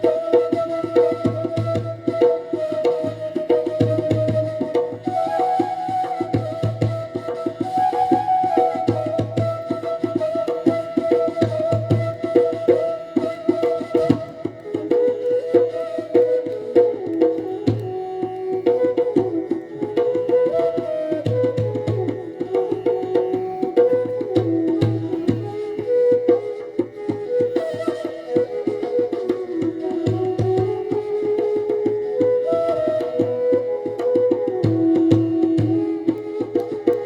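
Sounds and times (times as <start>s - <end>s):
hand drum strokes: 0.0s - 37.0s.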